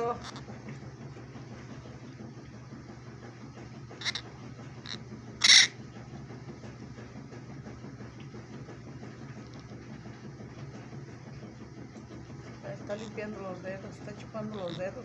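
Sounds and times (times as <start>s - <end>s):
low steady hum: 0.0s - 15.0s
parrot squawking: 0.1s - 0.4s, 4.0s - 4.3s, 4.9s - 5.8s, 12.8s - 13.2s, 14.4s - 15.0s.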